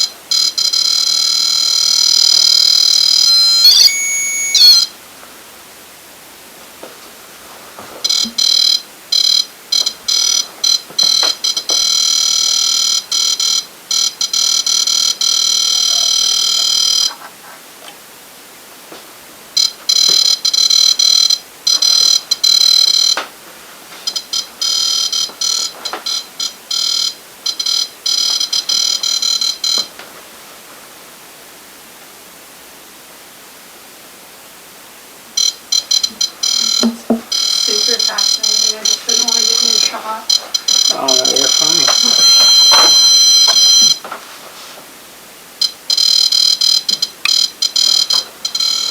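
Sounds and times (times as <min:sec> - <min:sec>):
shrill electronic alarm tone: 0:00.0 - 0:04.9, 0:35.4 - 0:44.0, 0:45.6 - 0:48.9.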